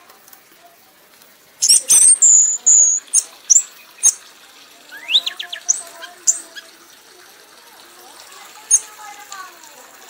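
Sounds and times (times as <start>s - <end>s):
songbird chirping: 1.6s - 6.8s, 8.5s - 9.0s.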